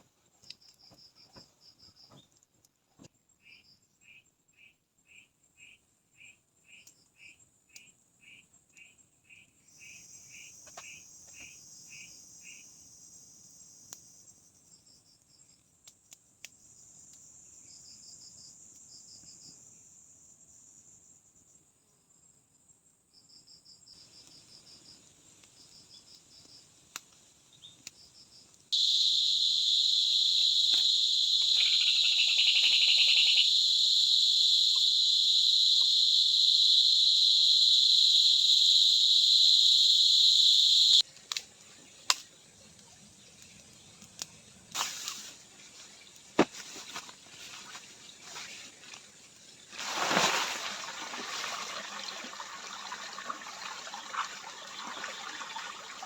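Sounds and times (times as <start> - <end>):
crickets chirping: 9.3 - 15.7, 16.5 - 56.0
high-pitched insect buzz: 28.8 - 41.0.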